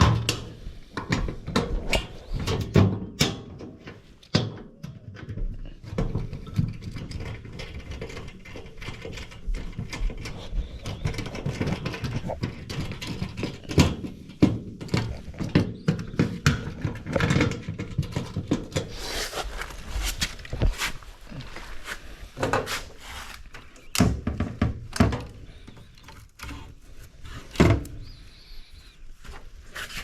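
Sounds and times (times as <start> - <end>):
rustling scrape: 18.6 - 23.8, 26.4 - 30.0.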